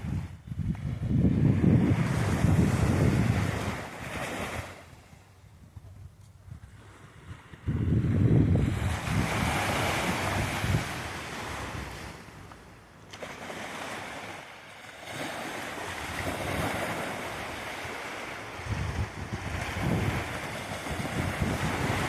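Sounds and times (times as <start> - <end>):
sea waves breaking and washing: 0.0 - 5.5, 6.5 - 22.0.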